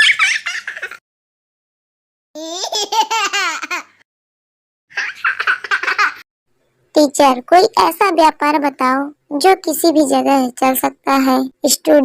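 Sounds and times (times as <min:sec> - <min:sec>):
high-pitched laughter: 0:00.0 - 0:01.0.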